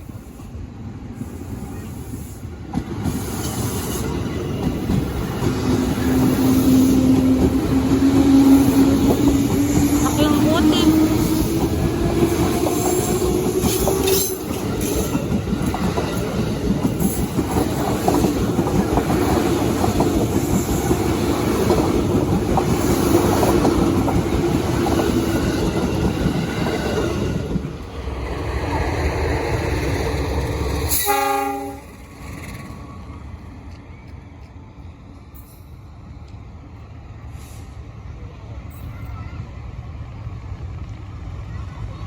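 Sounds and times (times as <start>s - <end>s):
train wheels clattering: 2.7s - 27.7s
train horn blast: 31.0s - 31.9s.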